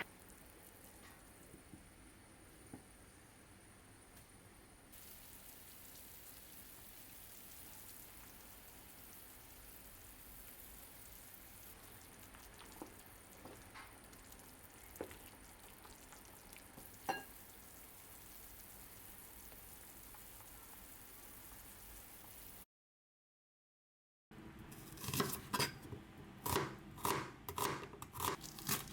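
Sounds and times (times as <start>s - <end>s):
food cooking in pot hissing: 4.9s - 22.6s.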